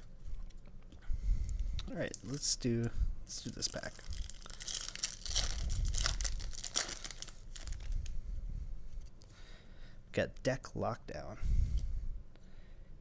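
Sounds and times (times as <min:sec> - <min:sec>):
cards rustling: 0:03.4 - 0:08.0
foil wrapper tearing: 0:03.4 - 0:08.0.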